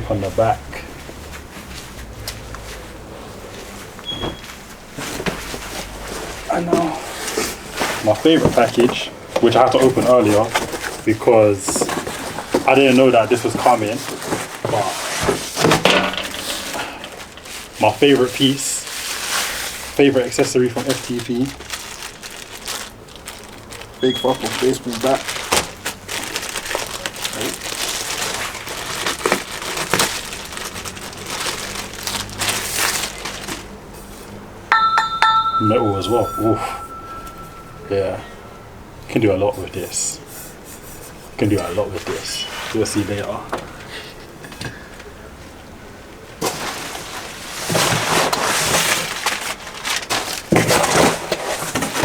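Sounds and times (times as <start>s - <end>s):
packaging crinkling and rustling: 4.6s - 33.9s, 46.4s - 52.0s.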